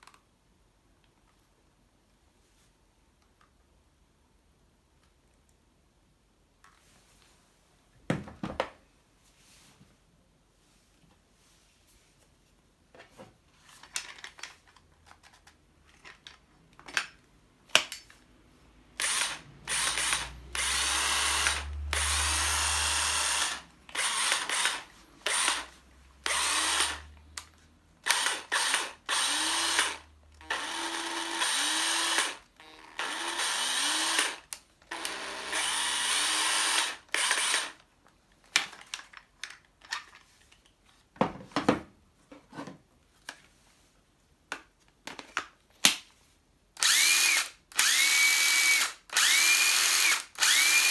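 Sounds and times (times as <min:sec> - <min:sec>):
cordless drill motor bursts: 0:19.0 - 0:27.2, 0:28.0 - 0:37.8, 0:46.8 - 0:50.9.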